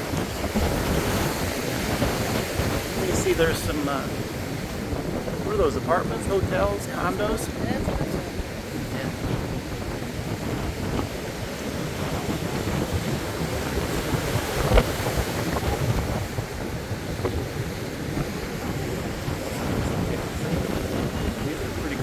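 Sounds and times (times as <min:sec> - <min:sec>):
ocean surf rushing: 0:00.0 - 0:22.0
wind buffeting microphone: 0:00.0 - 0:22.0.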